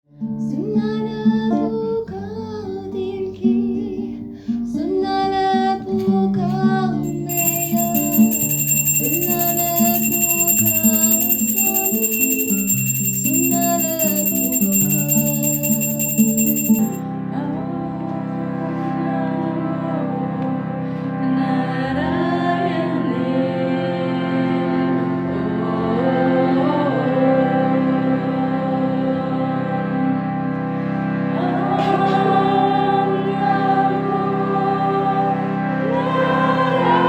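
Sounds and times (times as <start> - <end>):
high steady tones: 7.0 - 17.0.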